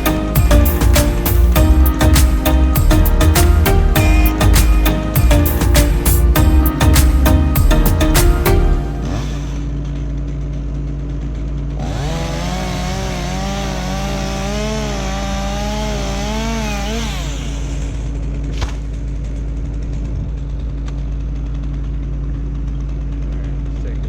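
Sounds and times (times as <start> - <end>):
steady engine drone: 0.0 - 18.4
chainsaw revving and cutting: 9.0 - 9.8, 11.7 - 18.1.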